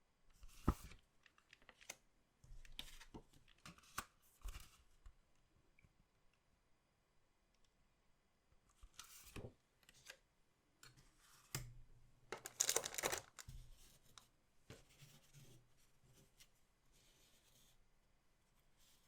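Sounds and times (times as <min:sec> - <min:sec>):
card handling clicks and taps: 0:12.4 - 0:13.5
plastic wrapper crinkling and tearing: 0:12.4 - 0:13.5.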